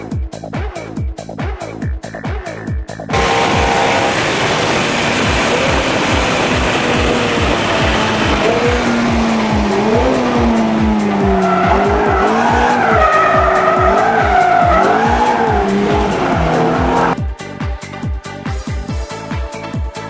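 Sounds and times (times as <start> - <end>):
car engine revving: 3.2 - 17.2
tyre squeal: 3.2 - 17.2.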